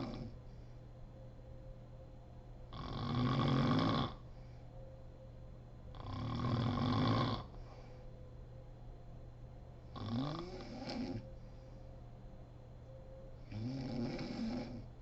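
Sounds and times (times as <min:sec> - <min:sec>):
woman snoring: 0:00.0 - 0:00.4, 0:02.7 - 0:04.2, 0:05.9 - 0:07.6, 0:09.9 - 0:11.3, 0:13.5 - 0:14.9.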